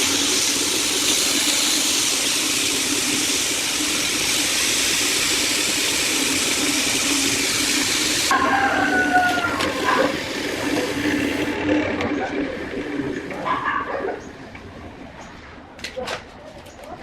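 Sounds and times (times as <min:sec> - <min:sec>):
wood lathe humming and hissing: 0:00.0 - 0:14.3.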